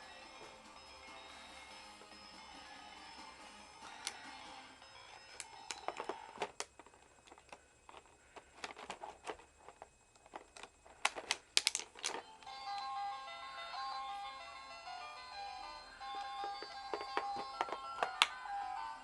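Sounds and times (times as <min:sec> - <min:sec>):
plastic toys clicking: 0:05.3 - 0:12.9, 0:16.2 - 0:18.4.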